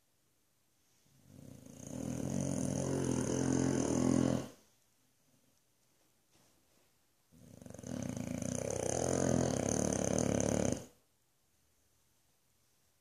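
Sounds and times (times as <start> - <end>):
dog snoring: 1.2 - 4.6, 7.3 - 11.0.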